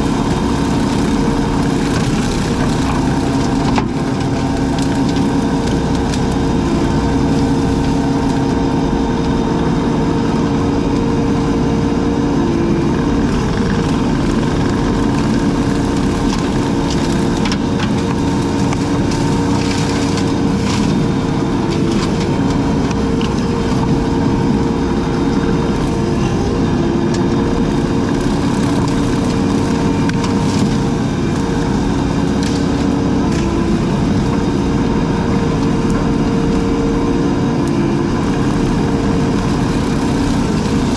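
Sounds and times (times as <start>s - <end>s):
brush and wood snapping: 0.0s - 8.6s, 13.3s - 24.2s, 27.1s - 34.6s
brush cutter engine running: 0.0s - 40.9s.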